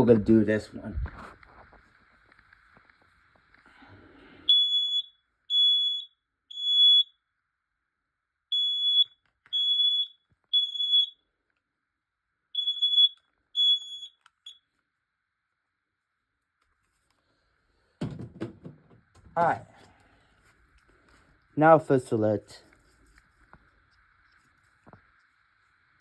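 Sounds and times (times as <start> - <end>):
smoke alarm beeping: 4.4 - 7.2, 8.5 - 11.2, 12.5 - 14.7.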